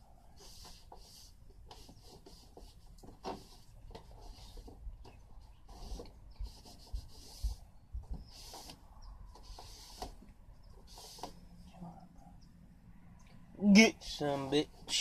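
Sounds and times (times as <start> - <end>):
hands rubbing and scraping casing: 0.4 - 11.4.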